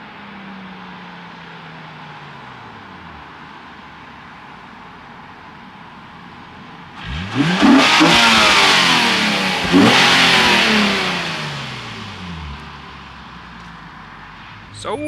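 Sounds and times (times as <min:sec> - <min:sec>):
sports car accelerating past: 0:06.9 - 0:14.8.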